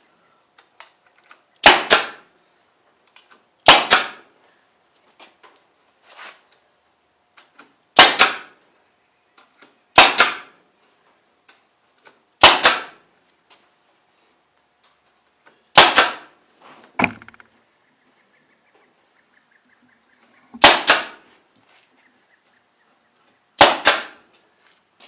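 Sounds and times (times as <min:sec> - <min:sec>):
power stapler firing: 0:01.3 - 0:02.3, 0:03.6 - 0:04.3, 0:07.5 - 0:08.6, 0:10.0 - 0:10.6, 0:12.4 - 0:13.0, 0:15.7 - 0:16.3, 0:20.6 - 0:21.2, 0:23.6 - 0:24.2.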